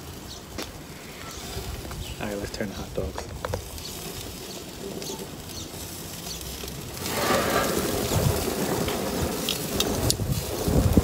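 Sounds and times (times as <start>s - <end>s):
wind buffeting microphone: 1.2s - 4.7s, 7.0s - 11.0s
metal tongs scraping grill grate: 6.3s - 10.7s.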